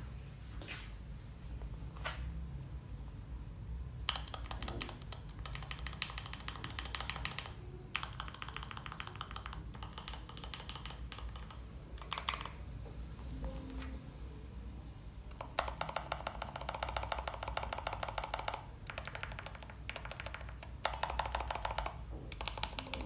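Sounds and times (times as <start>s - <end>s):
typing on mechanical keyboard: 4.1s - 12.6s, 15.3s - 23.0s.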